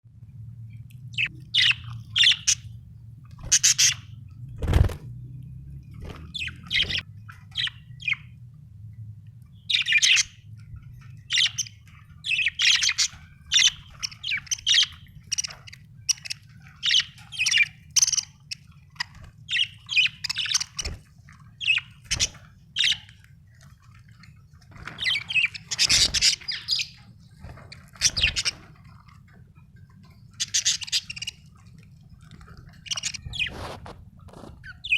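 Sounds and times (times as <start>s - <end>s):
steady low hum: 0.1s - 34.9s
budgerigar chirping and warbling: 1.2s - 2.7s, 3.4s - 4.2s, 6.3s - 8.3s, 9.7s - 10.4s, 11.3s - 21.0s, 25.0s - 27.0s, 27.9s - 28.6s, 30.4s - 31.4s, 32.7s - 33.6s.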